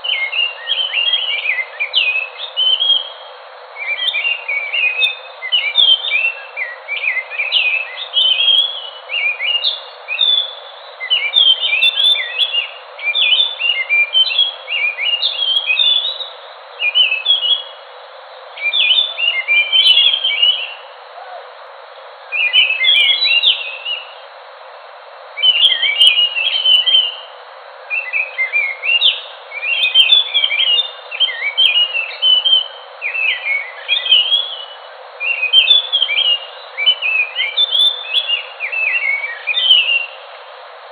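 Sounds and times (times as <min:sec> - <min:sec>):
thrush singing whistled notes: 0:00.0 - 0:24.3, 0:25.3 - 0:40.3
steady hiss: 0:00.0 - 0:40.9.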